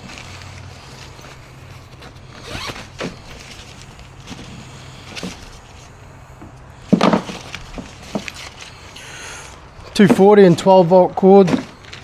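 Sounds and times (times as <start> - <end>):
packaging rustling: 0.0 - 6.0, 7.0 - 9.6
steady low hum: 0.0 - 10.0.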